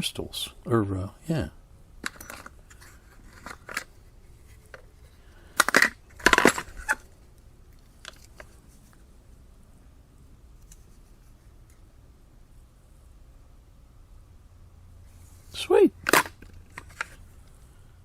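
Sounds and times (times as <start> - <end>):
electronic parts rustling and clattering: 2.0 - 9.1, 15.2 - 17.5.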